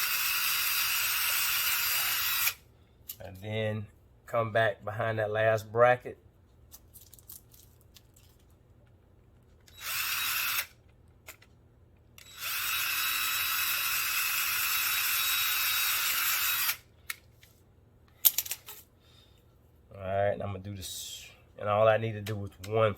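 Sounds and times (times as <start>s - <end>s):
electric drill boring plastic pipe: 0.0s - 2.6s, 9.7s - 10.7s, 12.2s - 16.8s.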